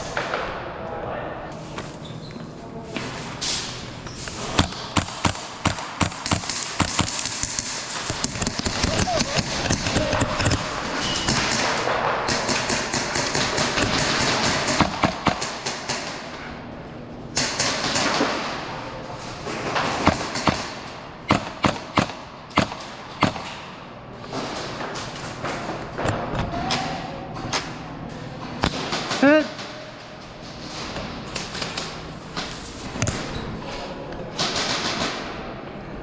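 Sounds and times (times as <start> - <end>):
airsoft gun shots: 20.0 - 23.6.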